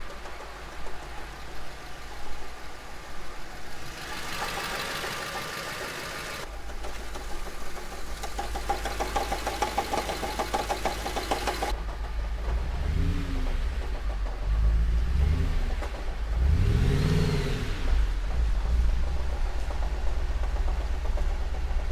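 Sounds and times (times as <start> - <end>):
car engine knocking: 0.0 - 21.9
engine revving: 3.6 - 20.7.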